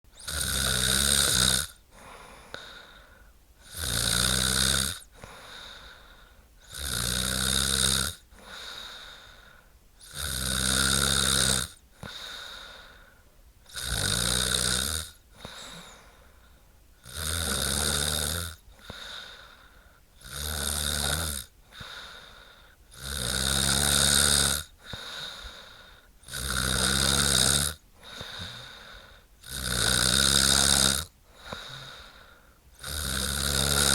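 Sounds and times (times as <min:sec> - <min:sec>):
woman snoring: 0:00.2 - 0:03.0, 0:03.6 - 0:09.4, 0:10.0 - 0:13.0, 0:13.7 - 0:16.2, 0:17.0 - 0:33.9
quiet breathing: 0:01.8 - 0:03.8, 0:05.0 - 0:06.7, 0:08.2 - 0:10.1, 0:11.8 - 0:13.8, 0:15.1 - 0:17.0, 0:17.7 - 0:20.3, 0:21.4 - 0:23.0, 0:24.7 - 0:26.6, 0:27.8 - 0:29.5, 0:30.6 - 0:33.9.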